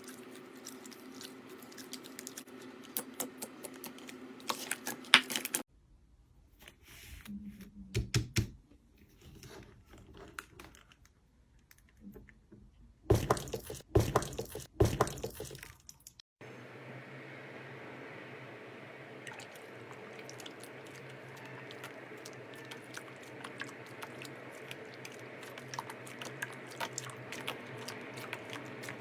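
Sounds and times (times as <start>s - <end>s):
steady low hum: 16.4s - 29.0s.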